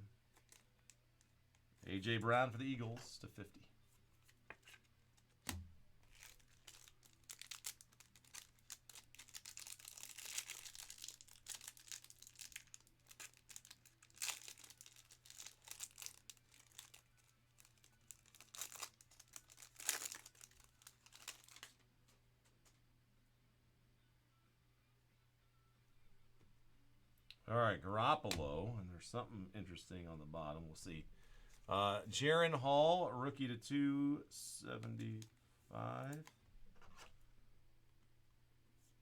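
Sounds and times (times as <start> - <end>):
plastic wrapper crinkling and tearing: 0.3 - 1.7, 6.0 - 21.9.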